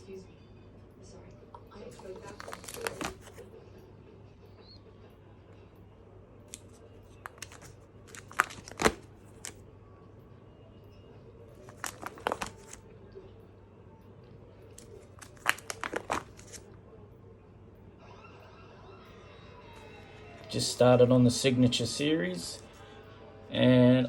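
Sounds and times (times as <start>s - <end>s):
plastic card sleeves crinkling: 2.0s - 3.4s, 6.5s - 9.6s, 11.6s - 12.8s, 14.7s - 16.7s.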